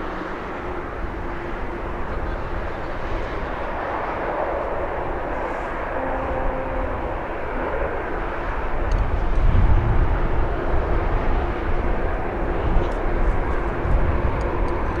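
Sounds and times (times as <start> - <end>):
jet engines roaring on takeoff: 0.0 - 15.0.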